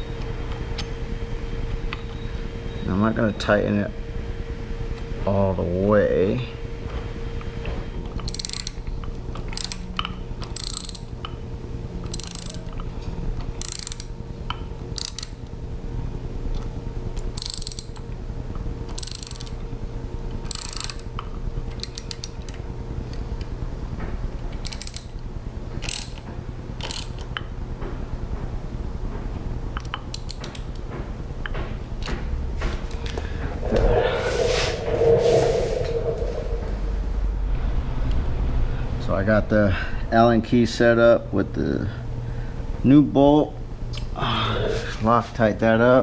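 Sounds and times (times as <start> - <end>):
ratchet wrench clicking: 8.2 - 8.8, 9.5 - 11.1, 12.0 - 12.8, 13.6 - 14.1, 15.0 - 15.4, 17.3 - 18.0, 18.9 - 19.6, 20.4 - 21.1, 21.8 - 22.4, 24.6 - 25.1, 25.8 - 26.2, 26.8 - 27.3.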